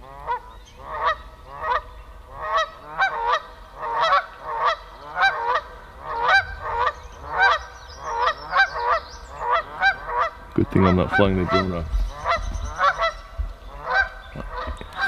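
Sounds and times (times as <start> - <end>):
geese honking: 0.0 - 15.0.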